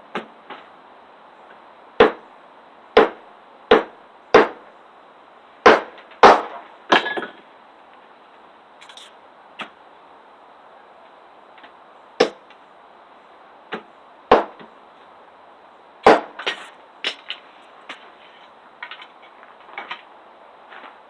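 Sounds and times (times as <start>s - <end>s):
hatchet chopping wood: 0.1s - 0.6s, 2.0s - 2.2s, 3.0s - 4.6s, 5.6s - 7.4s, 12.2s - 12.5s, 13.7s - 14.7s, 16.0s - 18.0s.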